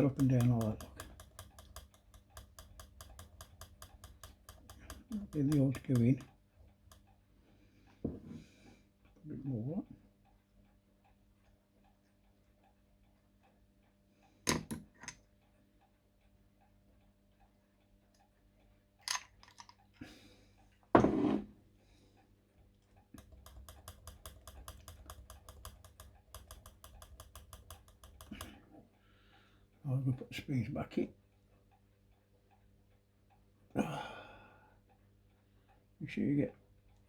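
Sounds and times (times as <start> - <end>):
knocks of clock parts handled: 0.0 - 6.3, 14.5 - 15.2, 23.2 - 28.6
clock ticking: 0.0 - 7.2, 23.0 - 28.7
fast sharp mechanical clicks: 23.2 - 28.5.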